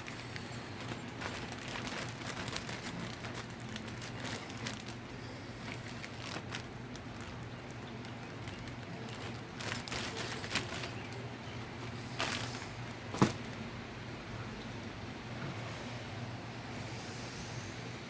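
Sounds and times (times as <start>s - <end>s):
rustles and light clicks: 0.0s - 13.6s
steady low hum: 0.0s - 18.0s.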